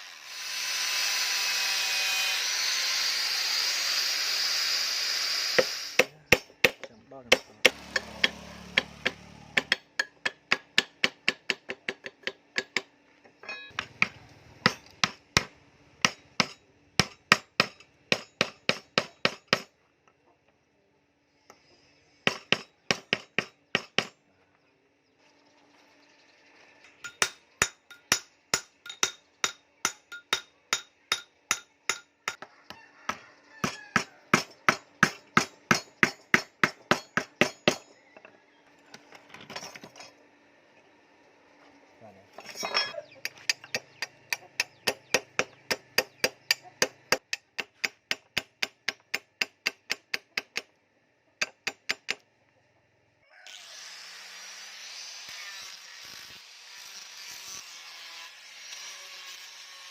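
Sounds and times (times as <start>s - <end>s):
hammer striking steel: 5.6s - 19.7s, 27.0s - 32.5s, 33.6s - 37.9s, 42.4s - 50.7s.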